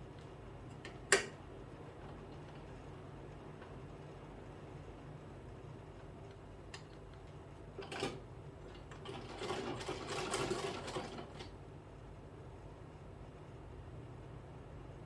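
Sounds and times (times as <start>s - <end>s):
sewing machine stitching: 8.9s - 11.5s.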